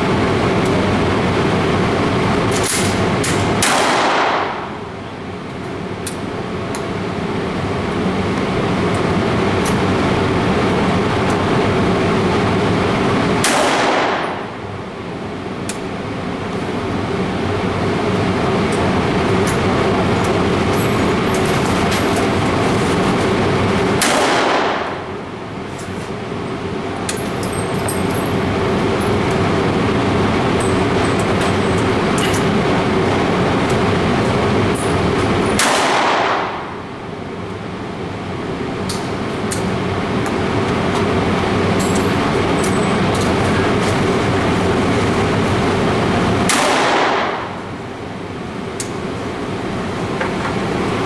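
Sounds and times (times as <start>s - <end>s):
shotgun shots echoing indoors: 2.7s - 4.8s, 13.4s - 14.5s, 24.0s - 25.0s, 35.6s - 36.7s, 46.5s - 47.6s.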